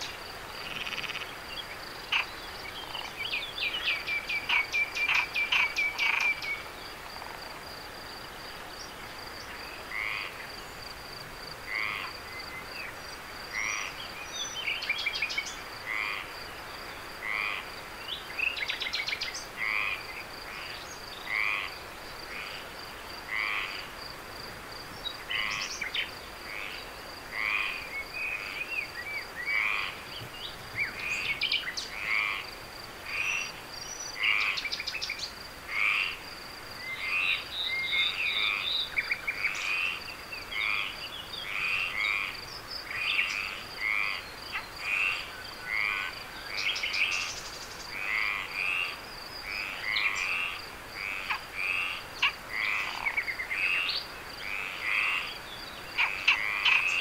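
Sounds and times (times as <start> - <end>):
high insect trill: 0.0 - 16.5
frogs croaking in chorus: 0.0 - 57.0.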